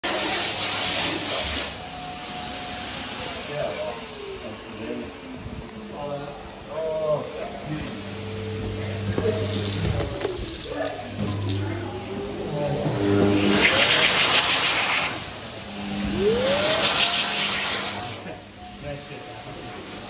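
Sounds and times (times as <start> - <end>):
hand dryer rushing air: 0.0 - 5.4, 7.8 - 18.8
motor whine spinning up: 7.4 - 20.0
hand dryer motor hum: 7.5 - 20.0.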